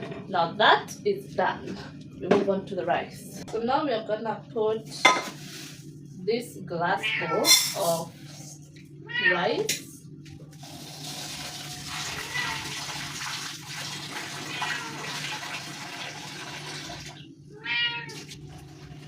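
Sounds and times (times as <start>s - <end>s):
cat meowing: 7.0s - 7.7s, 12.0s - 12.9s, 14.4s - 15.2s, 17.5s - 18.3s.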